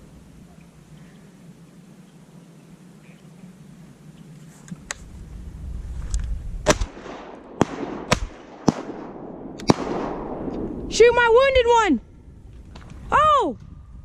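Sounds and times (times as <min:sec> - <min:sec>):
shotgun blasts: 0:06.6 - 0:11.0.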